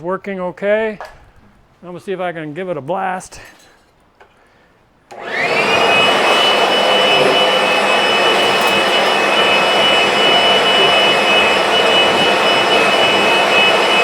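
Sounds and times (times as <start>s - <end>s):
leaf blower motor whine: 5.1s - 14.0s.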